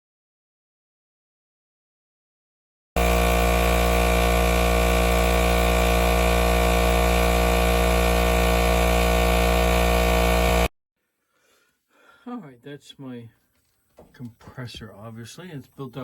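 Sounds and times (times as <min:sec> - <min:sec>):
air compressor running: 0:03.0 - 0:10.7.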